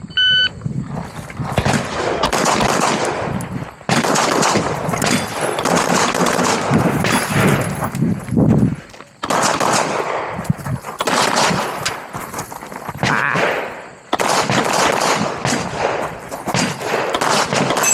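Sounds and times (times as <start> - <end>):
shot timer beep: 0.1 - 0.5
pistol firing rapidly: 1.6 - 7.6, 9.2 - 10.4, 11.0 - 11.8, 13.0 - 17.9.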